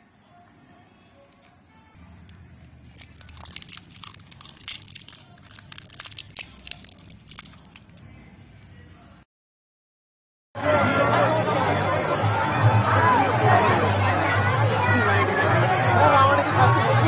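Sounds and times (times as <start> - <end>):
packaging crinkling and tearing: 2.3 - 8.0.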